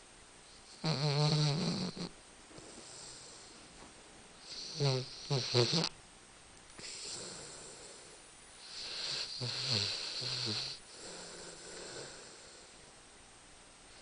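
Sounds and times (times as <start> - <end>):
dog snoring: 0.6 - 3.6, 4.4 - 6.0, 6.8 - 12.8.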